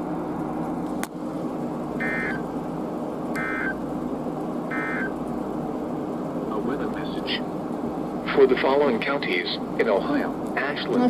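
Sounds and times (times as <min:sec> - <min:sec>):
steady hiss and hum: 0:00.0 - 0:11.0
warbling digital data bursts: 0:02.0 - 0:02.4, 0:03.4 - 0:03.8, 0:04.7 - 0:05.1.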